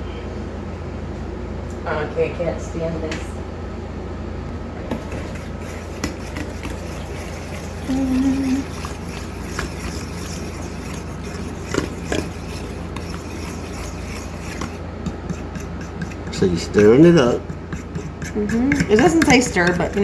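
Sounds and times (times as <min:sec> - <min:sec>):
low room hum: 0:00.0 - 0:20.0
spoon scraping in a bowl: 0:04.9 - 0:20.0.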